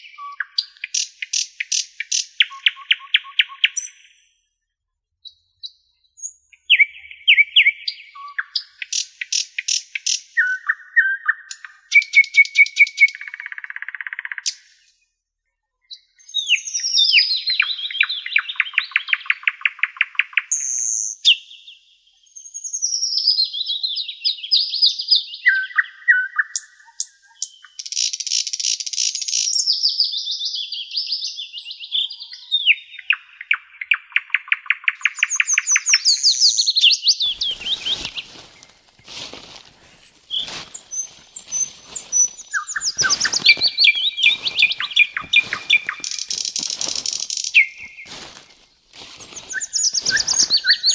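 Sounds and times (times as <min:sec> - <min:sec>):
songbirds singing: 0:15.8 - 0:21.9, 0:29.6 - 0:50.9
bird trilling: 0:35.0 - 0:50.9.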